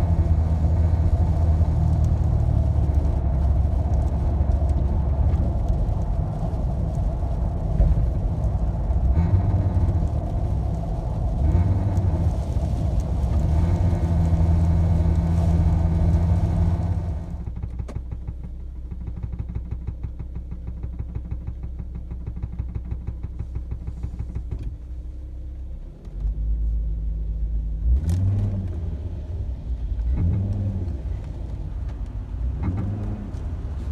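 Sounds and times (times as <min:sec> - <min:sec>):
car engine drone: 0:00.0 - 0:33.9.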